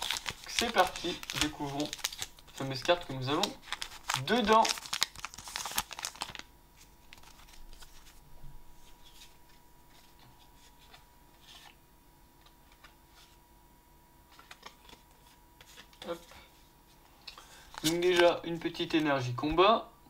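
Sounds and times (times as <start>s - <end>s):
foil wrapper crinkling: 0.0s - 8.2s, 17.6s - 19.0s
faint steady hum: 0.0s - 20.0s.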